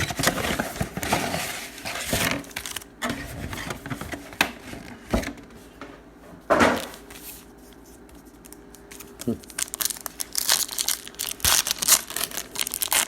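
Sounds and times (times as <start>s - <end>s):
packaging rustling scrape: 0.0s - 5.0s.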